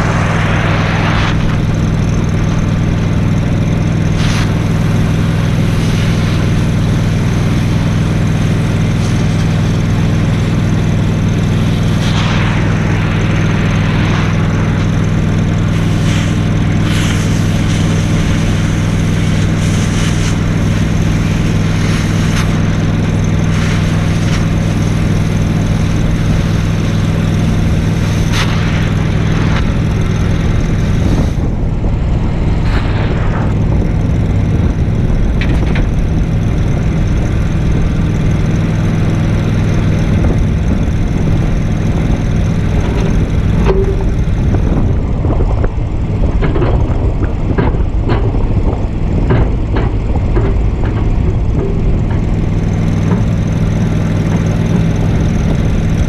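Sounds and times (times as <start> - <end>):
engine droning steadily: 0.0 - 56.0
short hissing bursts: 4.0 - 7.8, 8.7 - 31.4.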